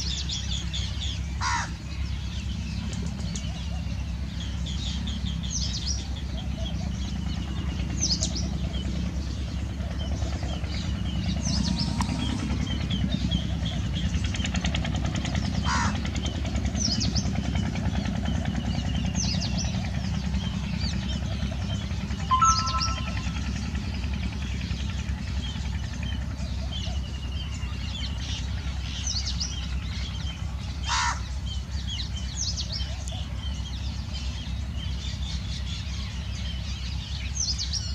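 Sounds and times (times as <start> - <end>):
sparrows chirping: 0.0 - 37.9
low rumble: 10.5 - 14.1.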